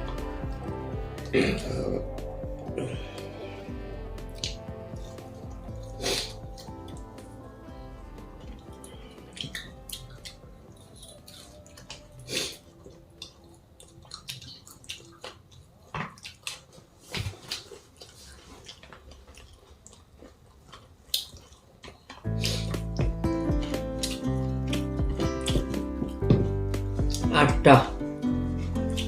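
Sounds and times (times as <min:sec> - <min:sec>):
loud background music: 0:00.0 - 0:12.7, 0:22.3 - 0:29.0
people chewing: 0:00.0 - 0:27.3, 0:28.4 - 0:29.0.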